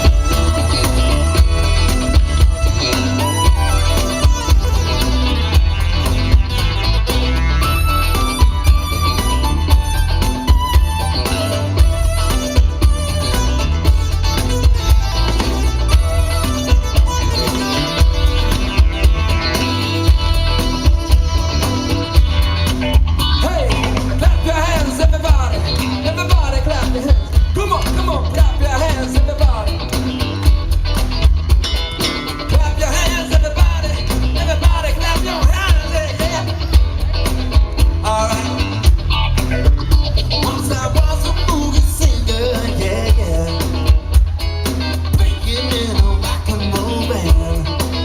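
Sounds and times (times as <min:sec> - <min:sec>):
bass guitar: 0:00.0 - 0:48.0
drums with steady beat: 0:00.0 - 0:48.0
electric guitar: 0:00.0 - 0:48.0
person singing: 0:40.3 - 0:44.1, 0:45.1 - 0:48.0.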